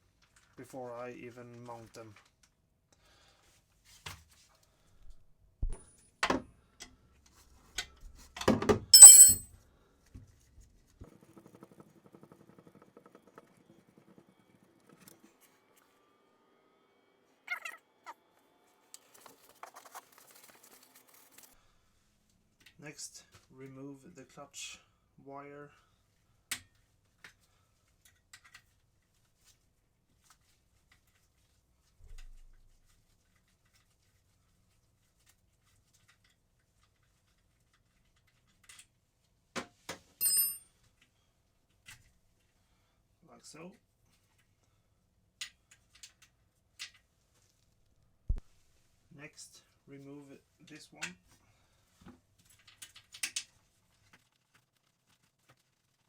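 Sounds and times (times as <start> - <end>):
metal tools knocking and clicking: 9.0 - 9.4
ringing metallic clink: 9.0 - 9.4, 40.2 - 40.6.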